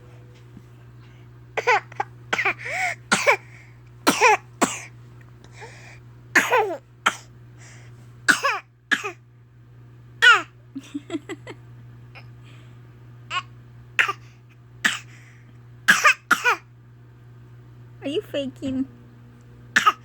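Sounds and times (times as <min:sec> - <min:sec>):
fake high-pitched coughing: 0:01.6 - 0:03.4, 0:04.1 - 0:04.9, 0:06.4 - 0:07.3, 0:08.3 - 0:09.2, 0:10.2 - 0:10.5, 0:13.3 - 0:14.2, 0:14.9 - 0:15.1, 0:15.9 - 0:16.7, 0:19.8 - 0:20.0.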